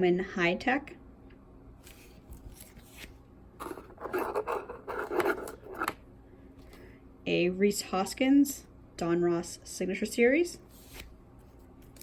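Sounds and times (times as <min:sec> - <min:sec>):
cards scraping and rustling: 0:01.8 - 0:06.0.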